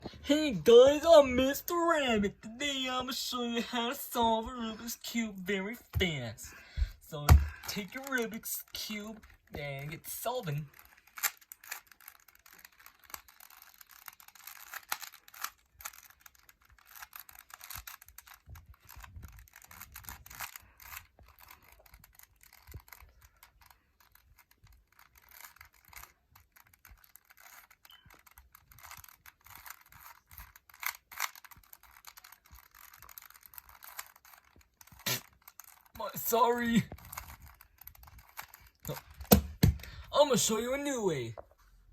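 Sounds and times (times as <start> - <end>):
puzzle cube plastic clicks: 7.1 - 41.4.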